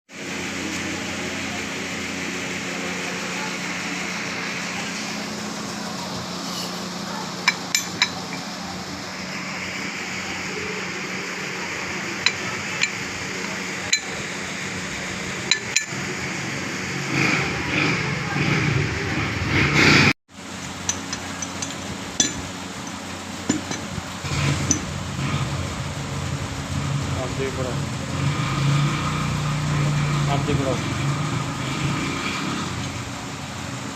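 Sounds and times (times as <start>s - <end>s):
steady background hum: 0.2s - 19.4s, 20.3s - 31.9s
metal tools clinking: 7.4s - 8.5s, 12.2s - 14.2s, 15.5s - 16.0s, 20.7s - 24.9s.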